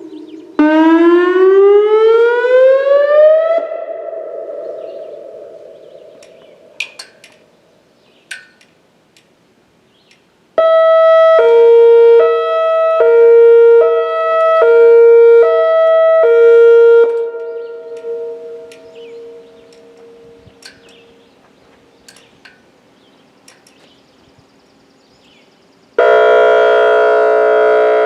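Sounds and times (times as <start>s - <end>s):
high-low warning siren: 0.0s - 7.0s, 10.6s - 22.2s, 24.2s - 28.0s.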